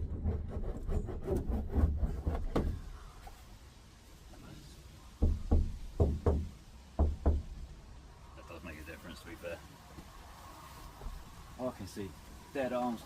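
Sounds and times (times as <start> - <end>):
taps on sheet metal roof: 5.2 - 7.7.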